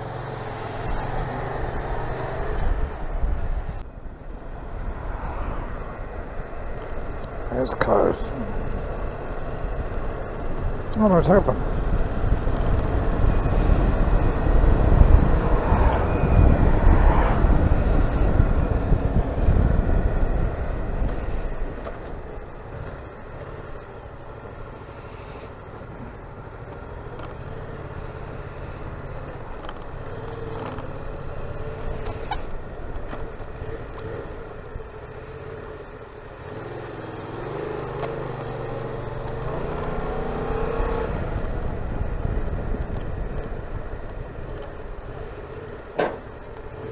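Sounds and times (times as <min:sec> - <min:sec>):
motorcycle engine running: 0:06.1 - 0:46.9
wind rush: 0:09.7 - 0:23.3.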